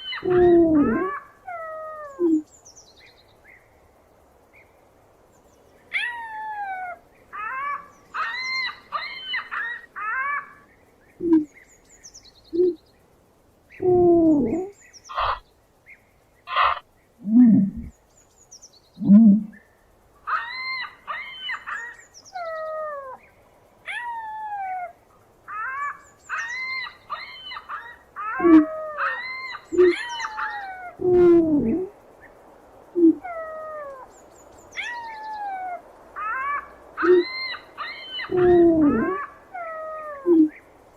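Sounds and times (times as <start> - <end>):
animal calls sliding down in pitch: 28.4 - 29.0, 38.3 - 39.3.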